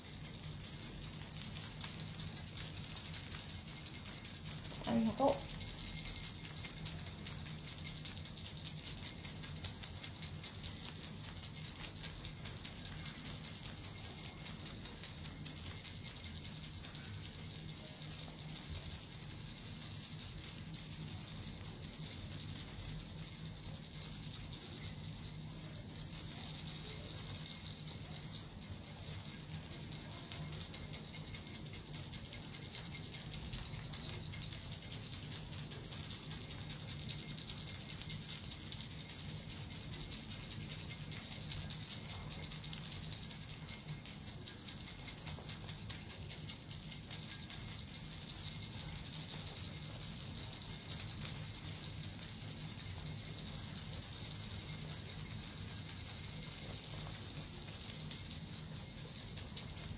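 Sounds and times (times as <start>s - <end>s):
small bells jingling: 0.0s - 59.9s
metal rattle shaken: 3.0s - 6.8s.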